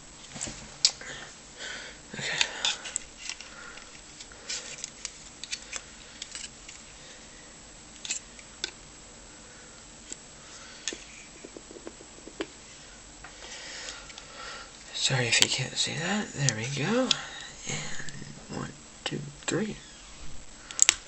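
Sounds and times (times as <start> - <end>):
knife clicking and scraping plastic: 8.0 - 8.8.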